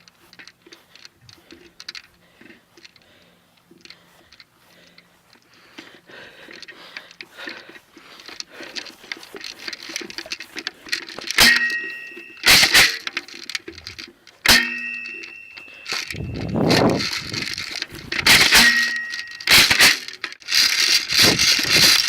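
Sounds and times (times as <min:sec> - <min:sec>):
faint rustling: 0:00.0 - 0:12.4
sharp metallic clacks: 0:08.2 - 0:22.0.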